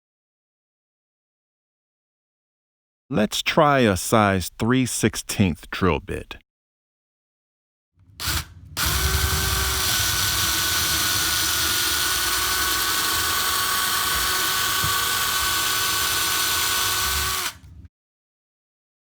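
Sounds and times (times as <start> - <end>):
electric drill boring into wood: 8.2 - 17.7.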